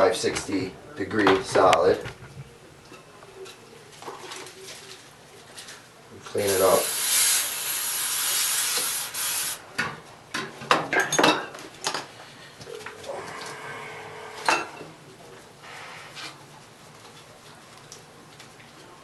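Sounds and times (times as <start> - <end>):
spray hiss: 6.5 - 9.6.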